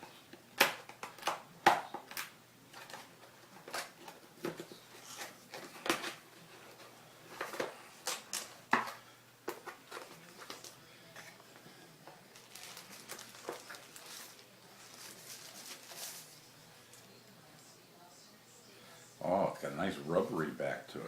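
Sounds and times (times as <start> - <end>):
packaging crackling and rustling: 0.6 - 11.3, 12.2 - 16.5.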